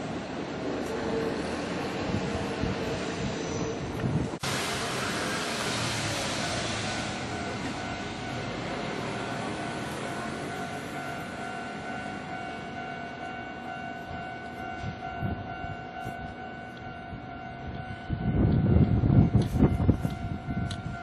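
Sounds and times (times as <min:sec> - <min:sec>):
passing train rushing: 0:00.0 - 0:21.0
level crossing warning bell: 0:04.8 - 0:21.0.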